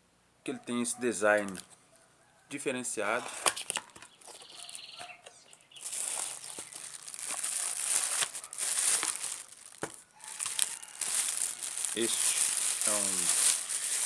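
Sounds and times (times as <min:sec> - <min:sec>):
packaging crinkling: 0:03.4 - 0:14.0.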